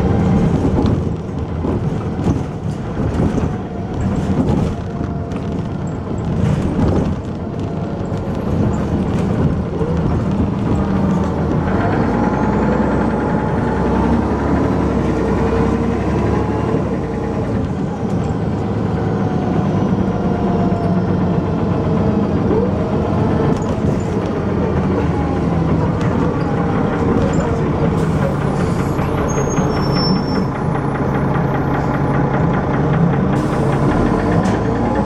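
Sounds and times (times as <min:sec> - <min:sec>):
bus diesel engine running: 0:00.0 - 0:35.0
engine knocking: 0:00.0 - 0:35.0.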